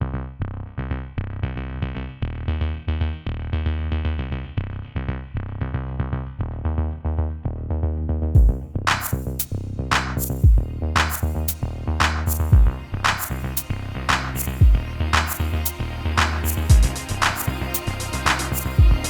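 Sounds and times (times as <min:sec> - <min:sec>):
electronic music: 0:08.4 - 0:19.0.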